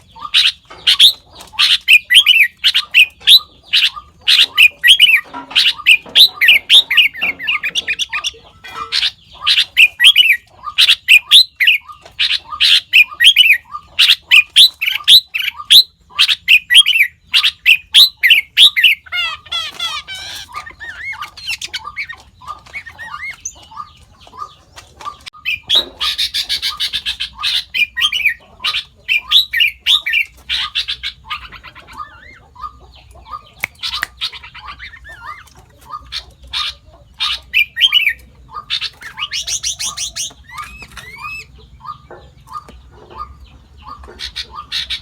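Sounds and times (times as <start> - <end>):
bird calling in sharp notes: 0.0 - 23.6.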